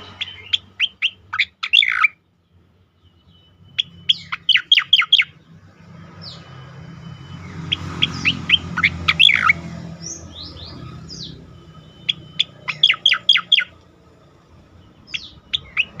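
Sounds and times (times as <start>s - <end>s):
bird whistling sharp notes: 0.0s - 2.2s, 3.4s - 5.4s, 7.4s - 13.8s.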